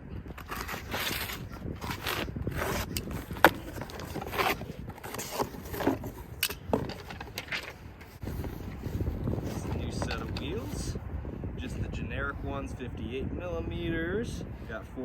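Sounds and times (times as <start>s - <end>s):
box scraping tearing and rustling: 0.4s - 10.8s.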